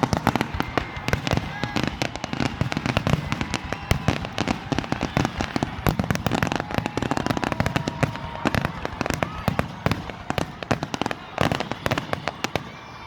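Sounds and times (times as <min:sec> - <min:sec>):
fireworks popping and crackling: 0:00.0 - 0:13.0.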